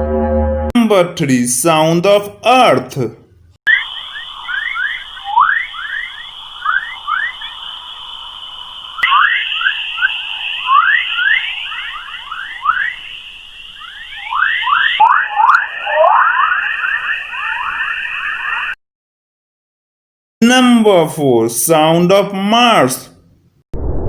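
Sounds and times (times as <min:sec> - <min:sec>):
rapid rising chirps: 0:03.7 - 0:18.8
steady high hiss: 0:03.8 - 0:14.9.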